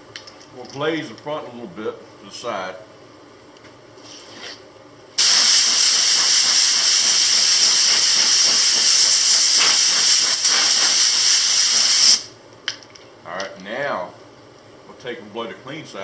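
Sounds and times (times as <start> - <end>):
compressed air hissing: 5.2 - 12.3.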